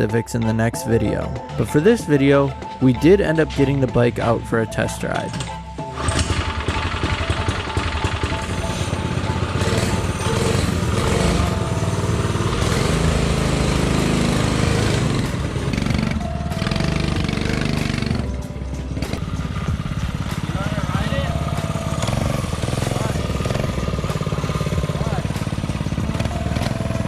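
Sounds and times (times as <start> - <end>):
small gas engine running: 5.8 - 27.0.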